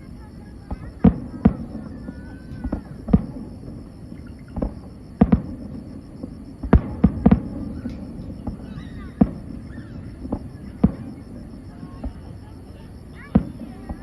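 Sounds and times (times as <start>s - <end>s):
fireworks bursting: 0.0s - 14.0s.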